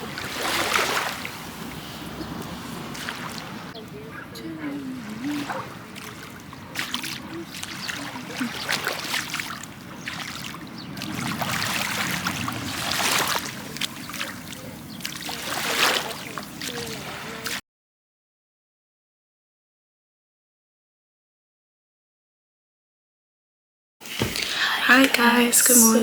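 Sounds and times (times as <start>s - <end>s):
sea waves washing on shore: 0.0s - 17.6s.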